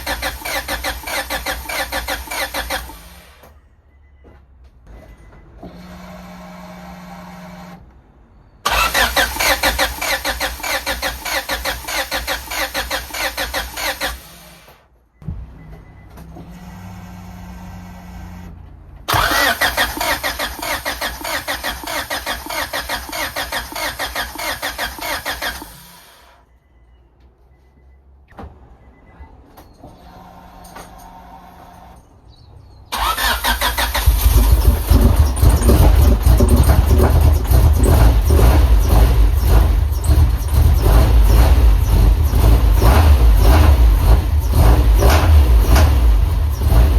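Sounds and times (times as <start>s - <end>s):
car engine cranking: 0.0s - 3.4s, 8.6s - 14.7s, 19.1s - 26.3s, 32.9s - 46.9s.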